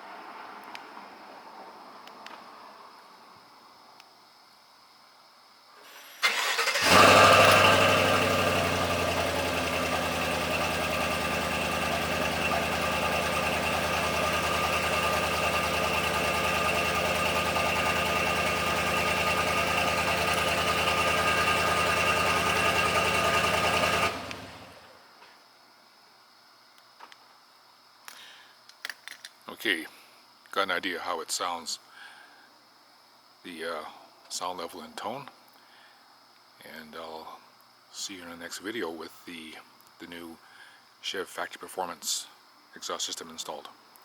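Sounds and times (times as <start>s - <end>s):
starter motor cranking: 6.2s - 24.9s
engine revving and idling: 6.2s - 25.0s.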